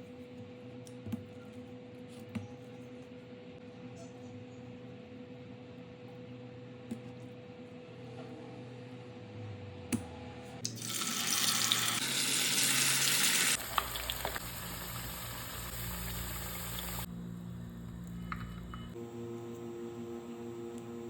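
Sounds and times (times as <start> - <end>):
potatoes sizzling in hot oil: 10.8 - 17.1.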